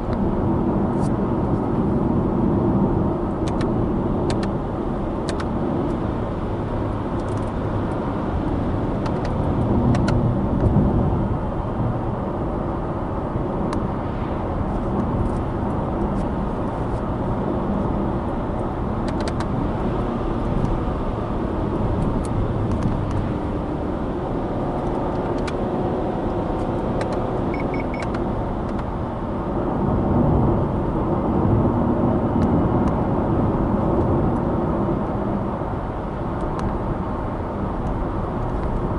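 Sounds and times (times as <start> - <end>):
car engine and road noise: 0.0 - 38.9.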